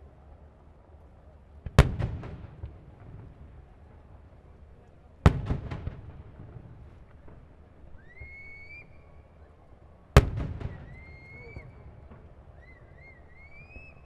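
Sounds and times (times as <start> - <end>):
firework cracks and echo: 1.6 - 4.5, 5.1 - 8.8, 10.2 - 12.8
rising firework whistle: 7.9 - 9.4, 10.5 - 14.0.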